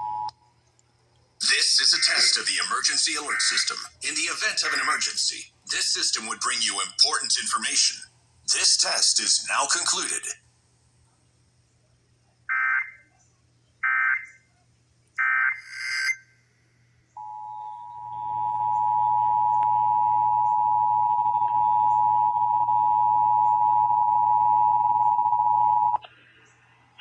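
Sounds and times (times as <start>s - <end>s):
data tone bursts: 1.4s - 6.1s, 15.4s - 16.2s
steady two-tone attention signal: 17.2s - 26.0s.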